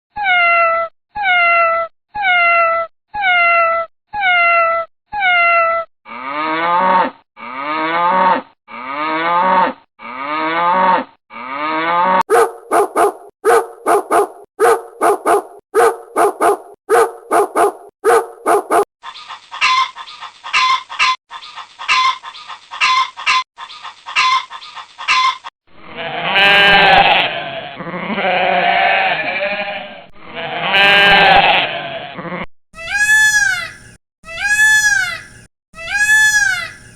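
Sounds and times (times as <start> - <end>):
goat or sheep bleating: 25.9 - 32.2, 35.8 - 36.9
rapid clipped animal calls: 32.8 - 36.9.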